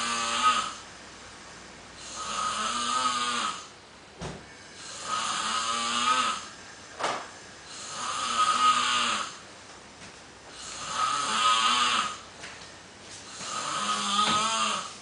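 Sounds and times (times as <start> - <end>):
person snoring: 0.0 - 0.8, 2.0 - 3.7, 4.8 - 6.5, 7.6 - 9.4, 10.5 - 12.2, 13.3 - 15.0.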